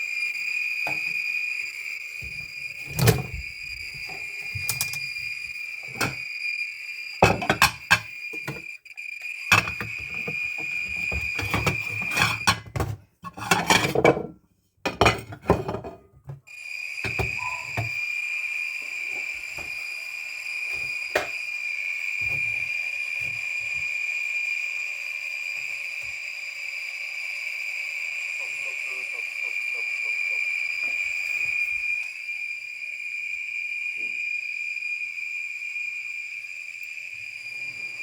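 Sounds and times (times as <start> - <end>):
high-pitched beeper tone: 16.5 - 18.2.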